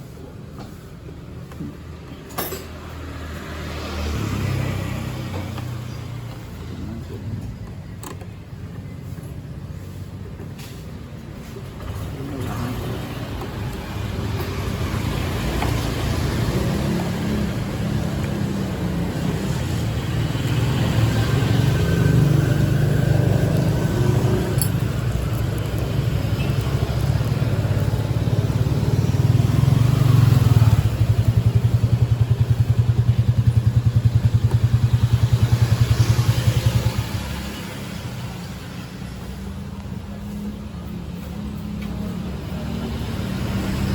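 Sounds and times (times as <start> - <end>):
motorcycle engine idling: 19.9 - 37.4.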